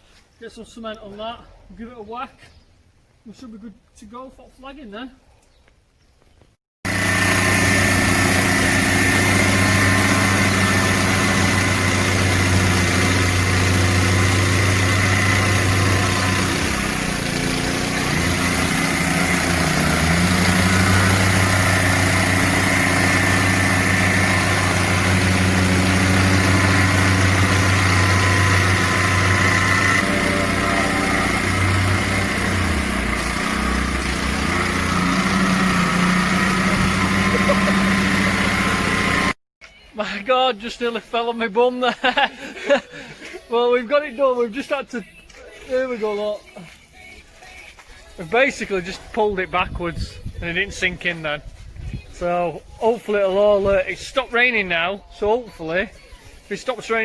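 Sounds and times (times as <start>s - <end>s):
plate compactor running: 6.9s - 39.4s.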